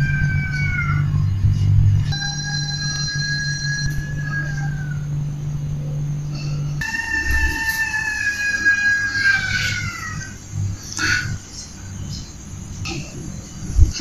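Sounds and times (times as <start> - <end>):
high-pitched wailing cries: 0.0 - 1.5, 2.1 - 5.3, 6.8 - 11.6.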